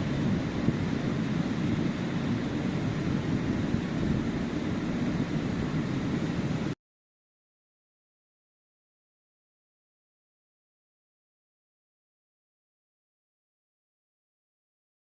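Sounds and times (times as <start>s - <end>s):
waves breaking on beach: 0.0s - 6.8s
wind rumble on microphone: 0.0s - 6.8s.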